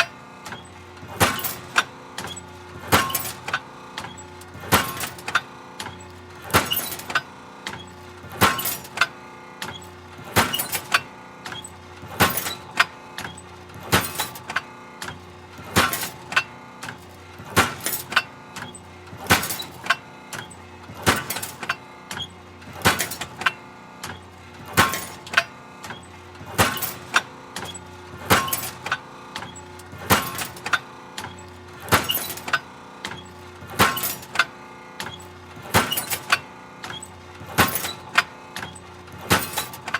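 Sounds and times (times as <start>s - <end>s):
metal shear banging: 6.5s - 7.2s, 10.4s - 11.0s, 12.2s - 12.9s, 14.0s - 14.6s, 15.7s - 21.8s, 22.8s - 39.9s.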